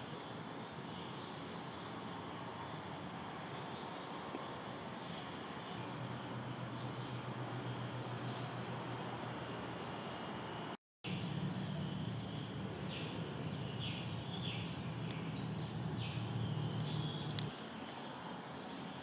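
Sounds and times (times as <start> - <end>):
steady low hum: 0.1 - 17.6.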